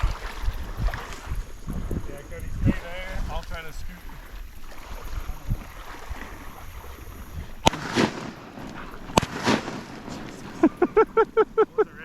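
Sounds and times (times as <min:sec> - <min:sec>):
wind rumble on microphone: 0:00.0 - 0:12.0
bird slapping on water: 0:04.1 - 0:11.4.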